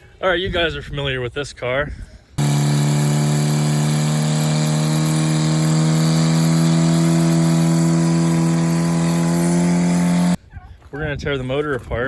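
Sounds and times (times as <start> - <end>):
motor humming: 2.4 - 10.4.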